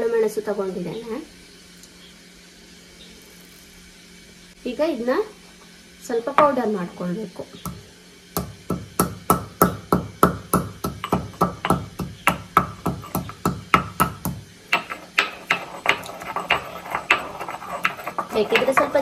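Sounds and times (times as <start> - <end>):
pestle pounding in a mortar: 8.4 - 19.0.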